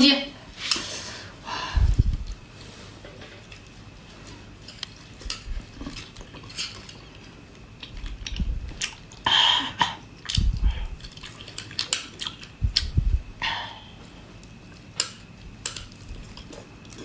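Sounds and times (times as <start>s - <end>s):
chewing: 3.4s - 9.3s, 10.0s - 13.0s, 14.3s - 17.0s
utensils clicking on dish: 15.0s - 17.0s.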